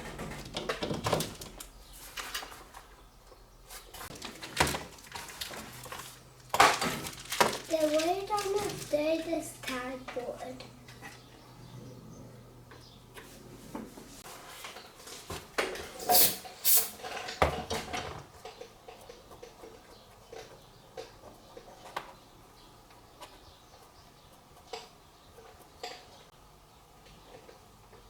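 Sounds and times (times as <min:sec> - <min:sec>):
hard objects clicking and knocking: 0:00.0 - 0:02.6
objects clattering on work surface: 0:00.0 - 0:02.7, 0:04.0 - 0:08.9, 0:13.2 - 0:22.1.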